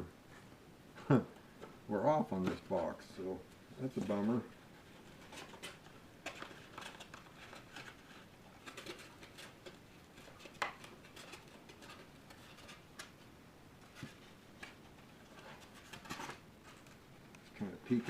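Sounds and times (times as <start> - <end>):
trading cards clicking and rustling: 3.8 - 13.2.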